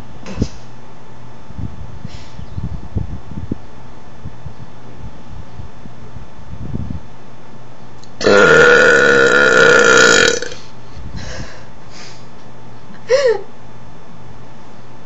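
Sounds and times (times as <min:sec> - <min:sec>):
woman belching: 0:08.2 - 0:10.6.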